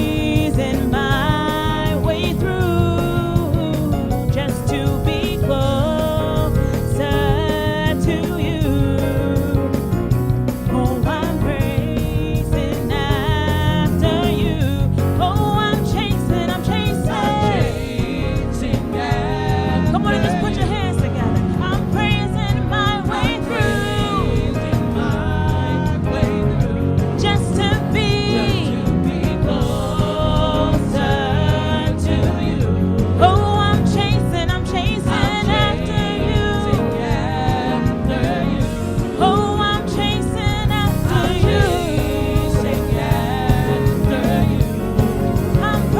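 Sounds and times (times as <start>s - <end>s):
solo voice singing with vibrato: 0.0s - 10.0s, 10.6s - 45.9s
band playing steady beat: 0.0s - 45.9s.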